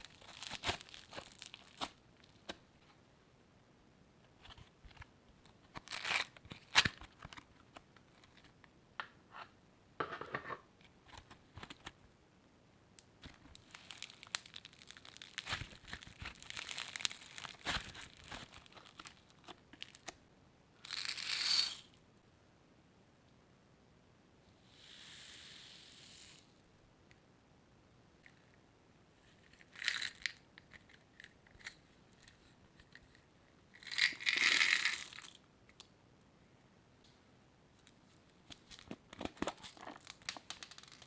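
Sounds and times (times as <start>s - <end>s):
slime crinkling: 0.0s - 2.6s, 13.2s - 20.1s, 38.4s - 41.0s.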